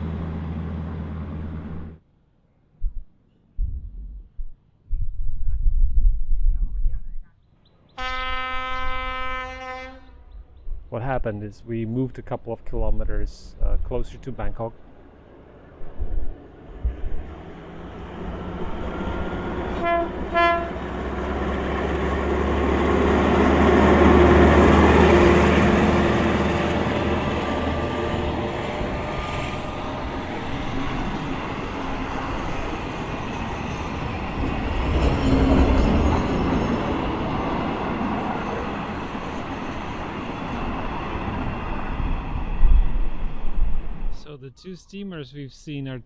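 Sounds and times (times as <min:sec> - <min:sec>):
train rumble: 0:00.0 - 0:02.0, 0:08.3 - 0:44.4
train horn toots: 0:08.0 - 0:10.3, 0:19.7 - 0:20.9.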